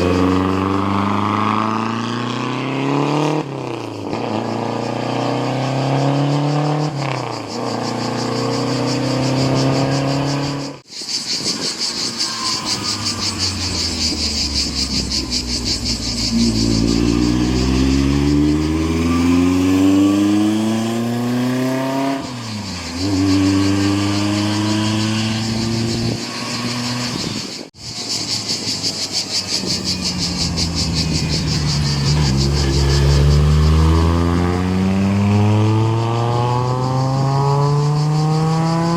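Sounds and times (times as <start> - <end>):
racing car engine accelerating: 0.0 - 10.8, 12.3 - 27.2, 29.8 - 38.9
racing engine revving: 12.3 - 27.2, 29.8 - 38.9.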